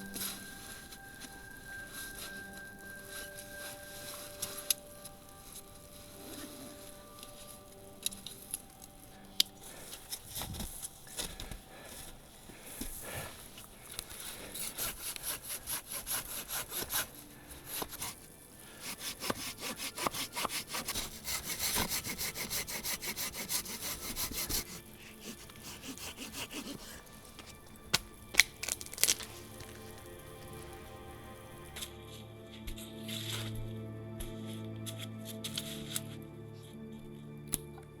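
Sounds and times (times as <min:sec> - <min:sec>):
hand saw cutting wood: 0:14.0 - 0:31.8.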